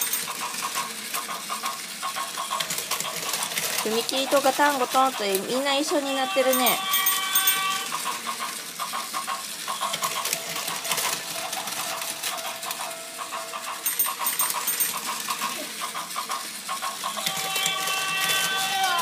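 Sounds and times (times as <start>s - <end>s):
toy crossing warning bell: 0.0s - 0.6s, 2.2s - 8.3s, 9.7s - 18.9s
toy train clattering on track: 0.0s - 19.0s
toy train rail-joint sound: 0.0s - 19.0s.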